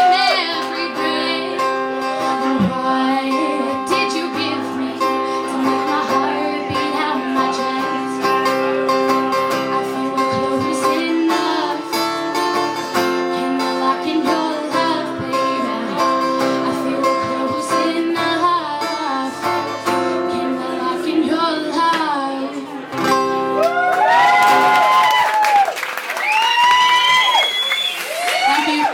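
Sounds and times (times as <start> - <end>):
woman singing: 0.0 - 22.7
strummed acoustic guitar: 0.4 - 23.6.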